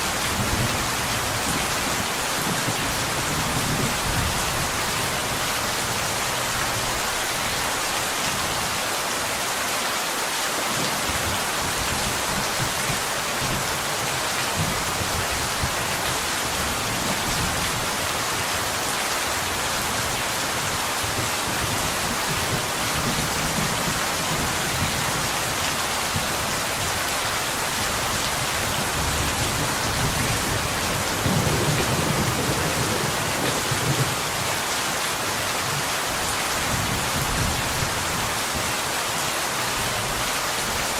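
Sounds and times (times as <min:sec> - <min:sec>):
rain on a window: 0:00.0 - 0:40.9
thunder rumble: 0:28.9 - 0:34.2.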